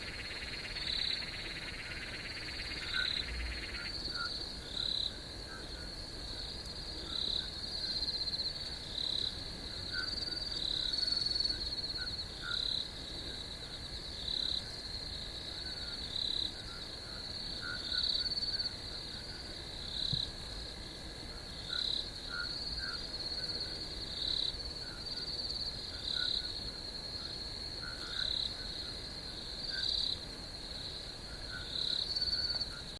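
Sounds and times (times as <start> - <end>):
lower insect chirps: 0.0 - 5.2
high-pitched chirring insects: 0.0 - 32.9.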